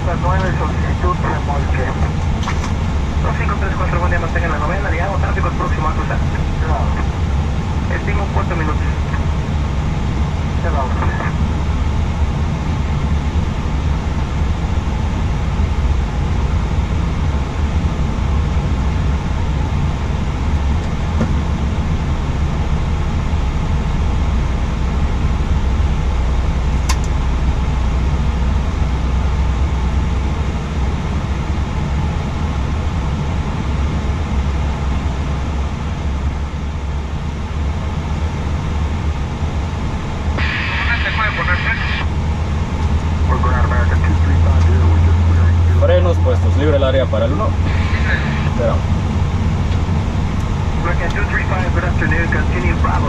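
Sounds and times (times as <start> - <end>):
low rumble and hiss in cockpit: 0.0 - 53.0
sharp click: 26.9 - 27.2.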